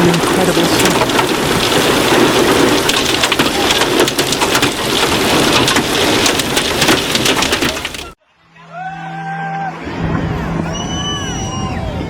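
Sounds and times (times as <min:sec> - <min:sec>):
heavy rain pouring: 0:00.0 - 0:08.2.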